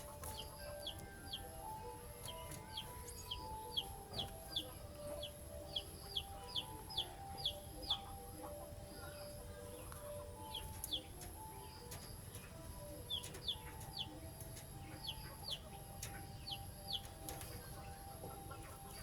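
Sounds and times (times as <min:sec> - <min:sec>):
soft background music: 0:00.0 - 0:19.0.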